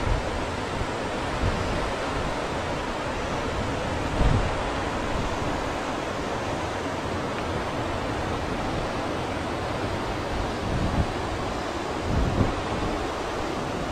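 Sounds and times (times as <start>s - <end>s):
stream rushing over rocks: 0.0s - 13.9s
wind buffeting microphone: 10.2s - 13.9s.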